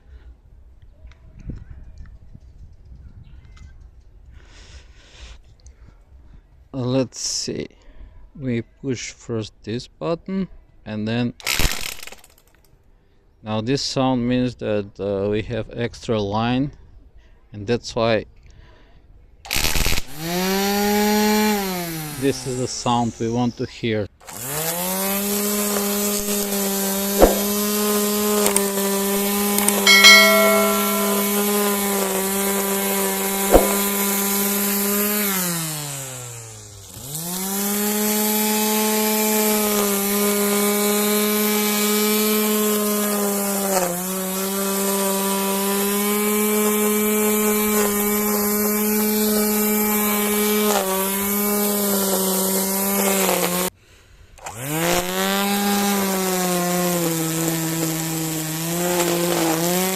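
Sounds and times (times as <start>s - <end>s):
electric grass trimmer motor whine: 50.1s - 53.7s, 54.4s - 59.9s.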